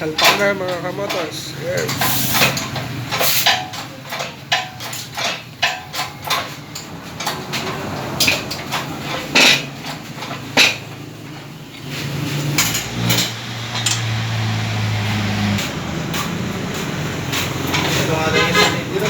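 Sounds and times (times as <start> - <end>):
sharp metal knocks: 0.0 - 11.6
metal tools clinking: 0.0 - 14.2, 17.2 - 19.0.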